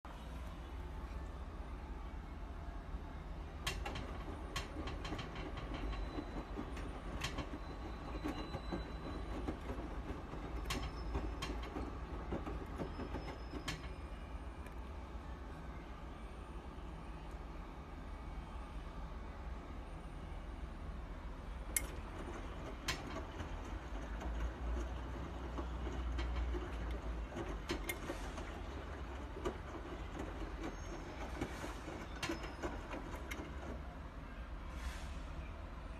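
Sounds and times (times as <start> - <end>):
washing machine rumbling: 3.4 - 16.9, 19.5 - 34.2.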